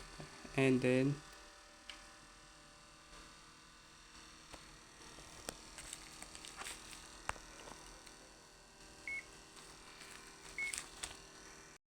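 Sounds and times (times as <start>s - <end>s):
multimeter beep: 9.1s - 9.3s, 10.6s - 10.8s.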